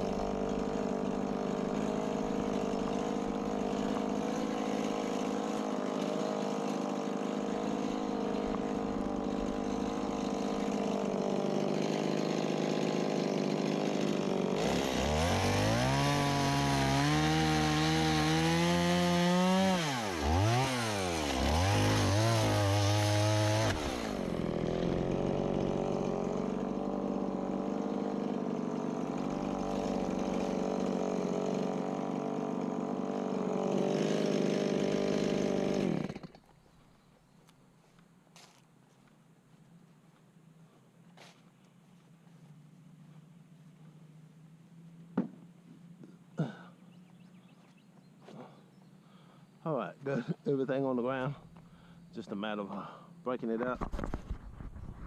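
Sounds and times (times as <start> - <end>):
chainsaw cutting wood: 0.0 - 36.7, 50.1 - 55.0
chainsaw idling: 0.0 - 36.7, 50.1 - 53.6.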